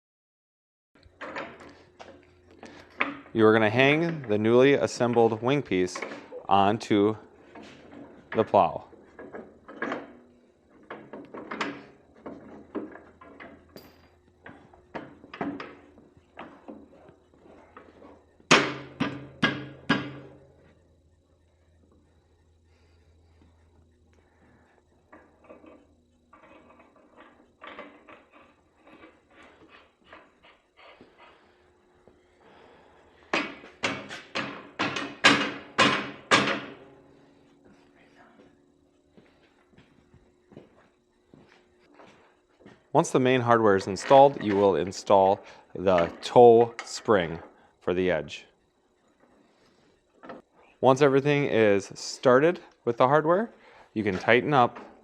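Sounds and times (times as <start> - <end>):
steel plow parts clanking: 1.0 - 20.7, 24.4 - 31.5.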